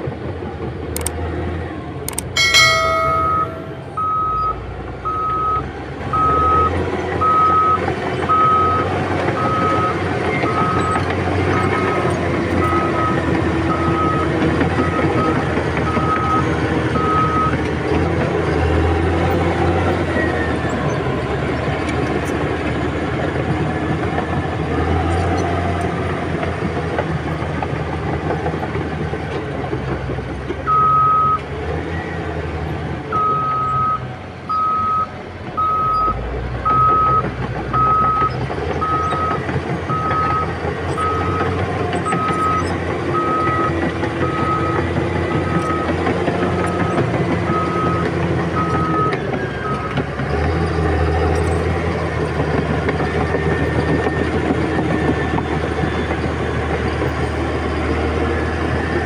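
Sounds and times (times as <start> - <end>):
heavy diesel machinery running: 0.0 - 59.0
reversing alarm beeping: 2.1 - 17.6, 33.1 - 50.0.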